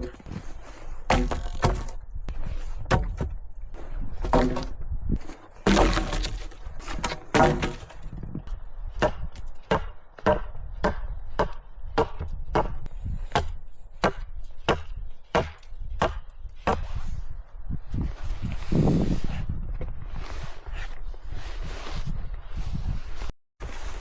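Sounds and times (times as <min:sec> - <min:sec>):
wood chopping blows: 0:01.1 - 0:02.0, 0:02.8 - 0:03.4, 0:04.2 - 0:08.1.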